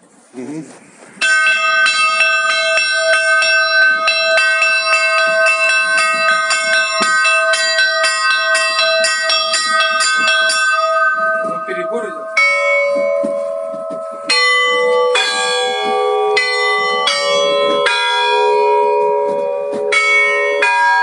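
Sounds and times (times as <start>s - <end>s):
church bells ringing: 1.2s - 21.0s.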